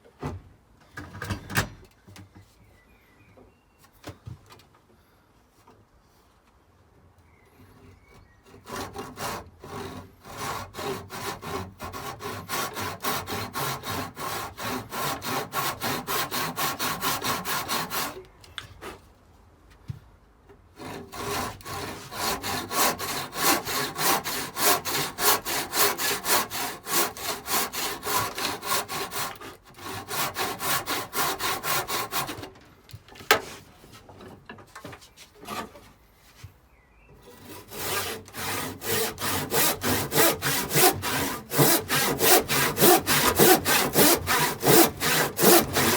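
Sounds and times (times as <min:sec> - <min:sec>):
handsaw ripping timber: 0:08.6 - 0:18.2, 0:20.8 - 0:32.5, 0:37.3 - 0:45.9.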